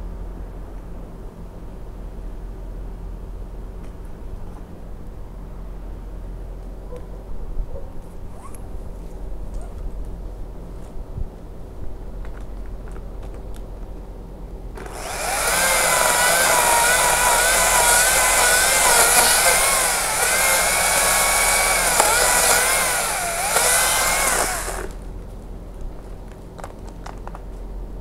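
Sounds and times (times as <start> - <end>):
chainsaw cutting wood: 14.8 - 25.0.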